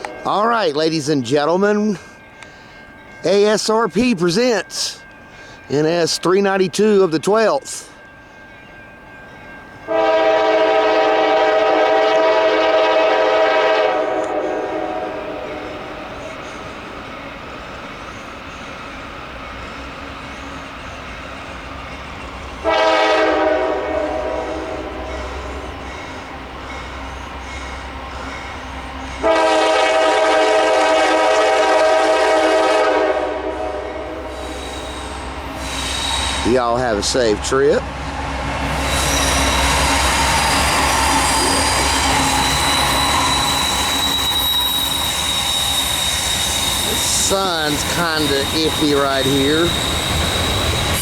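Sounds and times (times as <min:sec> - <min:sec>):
train rumbling: 0:00.0 - 0:51.0
locomotive air horn: 0:09.9 - 0:15.7, 0:22.6 - 0:25.6, 0:29.2 - 0:34.5
wheel flanges squealing: 0:34.3 - 0:37.6, 0:38.6 - 0:51.0.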